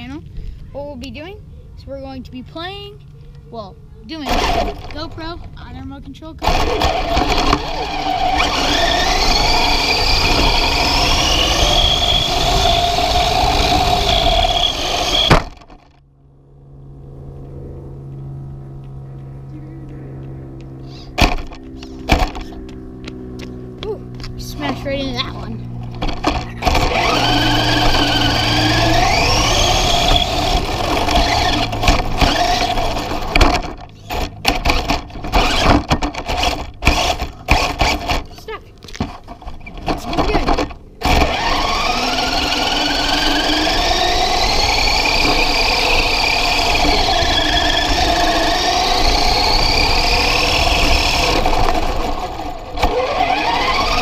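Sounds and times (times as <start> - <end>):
wheels rumbling on ground: 0.0 - 54.0
tyre and chassis noise: 2.5 - 54.0
motor whine rising in pitch: 4.0 - 5.6, 6.4 - 54.0
faint low hum: 16.0 - 32.9.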